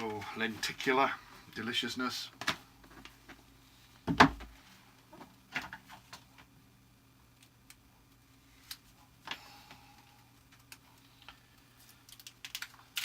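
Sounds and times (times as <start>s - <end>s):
plastic packaging clicks and rustles: 10.5s - 13.0s.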